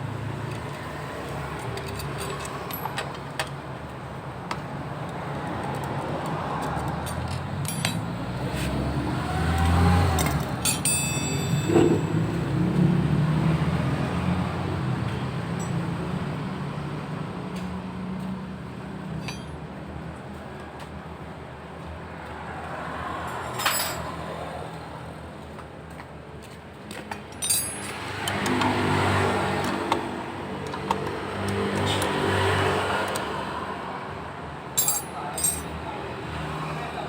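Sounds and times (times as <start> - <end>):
sharp metallic clinks: 7.0 - 8.1, 10.2 - 12.4, 19.2 - 19.6, 23.5 - 24.0, 27.3 - 28.5, 34.8 - 35.8.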